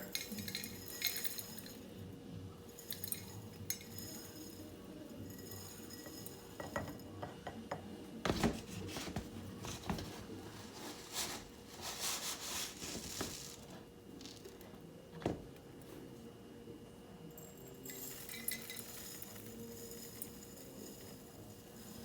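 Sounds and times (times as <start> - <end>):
cup clinking against glass jar: 0.0 - 1.9, 2.7 - 7.9, 17.4 - 22.0
oats pouring: 0.0 - 1.9, 2.7 - 6.6, 9.0 - 14.6, 17.8 - 22.0.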